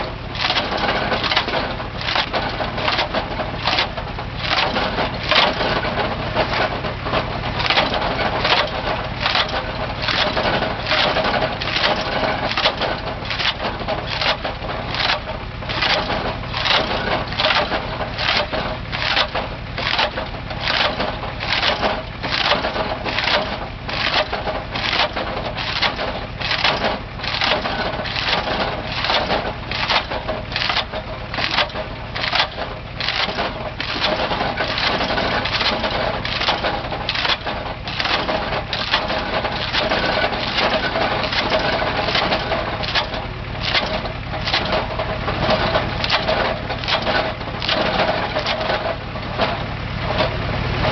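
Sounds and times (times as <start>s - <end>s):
powered machine cutting wood: 0.0s - 50.9s
wood crunching and splintering: 0.0s - 50.9s.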